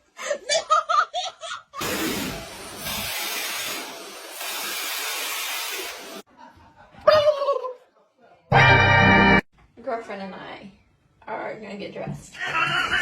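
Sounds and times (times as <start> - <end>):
loud rushing hiss: 1.8 - 6.2.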